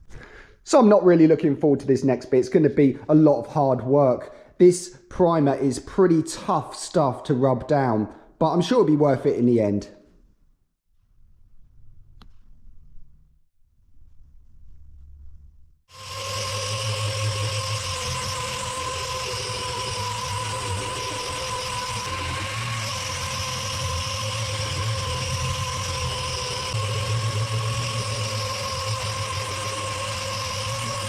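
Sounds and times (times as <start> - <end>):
sander running: 15.9 - 31.0.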